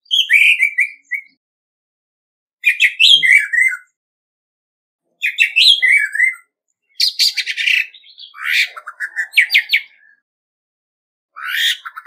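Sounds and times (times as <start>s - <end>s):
thrush singing whistled notes: 0.0s - 1.4s, 2.6s - 4.0s, 5.2s - 10.2s.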